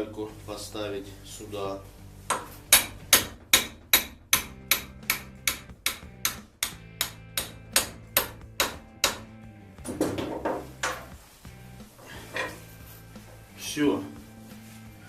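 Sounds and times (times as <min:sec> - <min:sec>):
hammer tapping on metal: 0:02.3 - 0:09.3.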